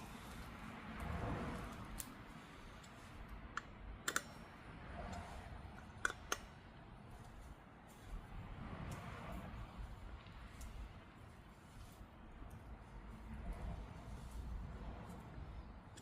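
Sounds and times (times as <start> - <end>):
hand tools clicking on metal: 1.9 - 7.5.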